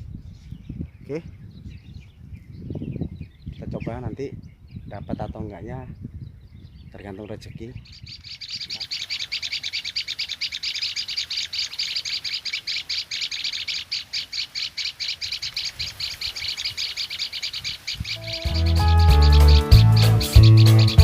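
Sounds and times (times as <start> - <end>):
reed warbler chattering song: 0.0 - 21.0.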